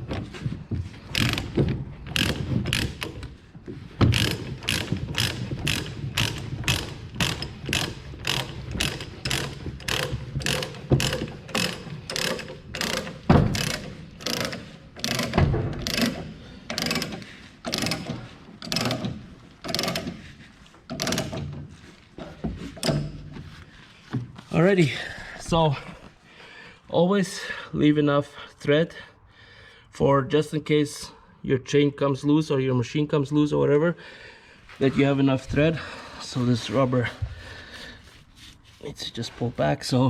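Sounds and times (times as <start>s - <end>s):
ratchet clicks: 1.1s - 3.3s, 4.0s - 20.2s, 20.9s - 21.6s.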